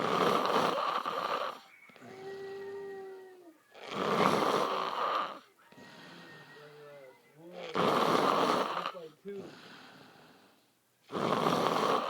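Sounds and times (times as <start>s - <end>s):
man snoring heavily: 0.0s - 1.6s, 3.8s - 5.4s, 7.7s - 9.0s, 11.1s - 12.0s.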